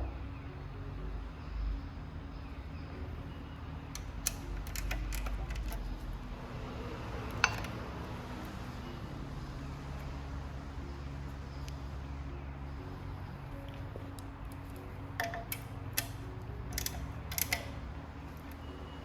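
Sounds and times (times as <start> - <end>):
low mechanical hum: 0.0 - 19.0
light clicks and rattles: 3.9 - 6.1, 13.7 - 18.6.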